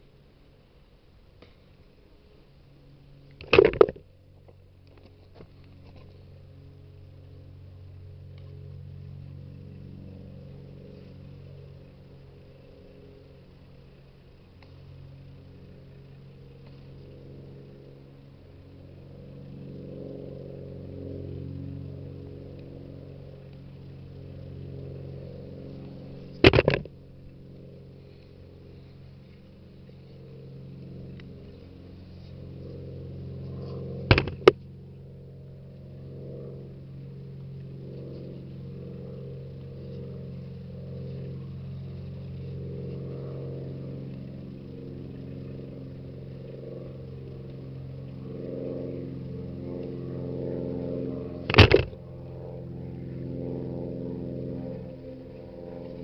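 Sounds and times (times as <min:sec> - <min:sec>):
propeller airplane engine droning: 0:00.0 - 0:56.0
sharp knocks: 0:26.4 - 0:26.9, 0:34.1 - 0:34.6, 0:51.5 - 0:52.0.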